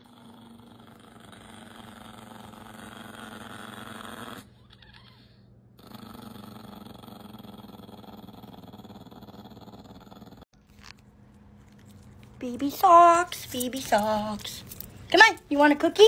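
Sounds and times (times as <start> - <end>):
dog growling low: 0.0 - 4.6, 5.8 - 10.5.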